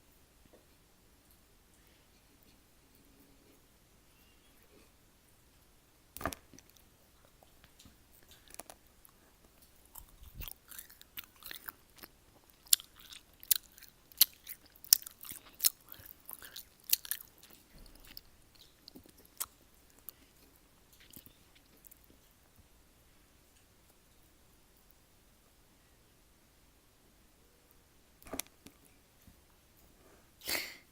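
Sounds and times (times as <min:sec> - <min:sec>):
chewing with wet mouth clicks: 0:06.6 - 0:22.2.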